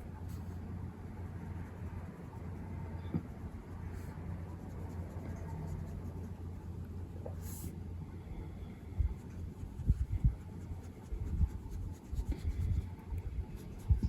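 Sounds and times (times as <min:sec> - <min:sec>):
colouring tool scratching paper: 0:09.2 - 0:12.9.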